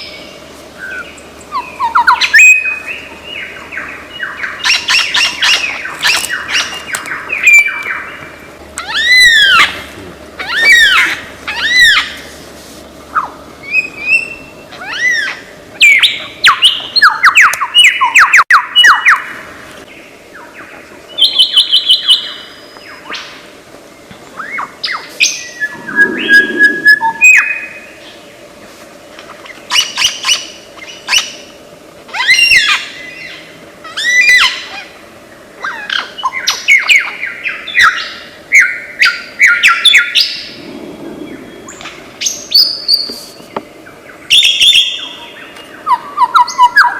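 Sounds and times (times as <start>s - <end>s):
lyrebird singing mimicked calls: 25.6s - 27.5s.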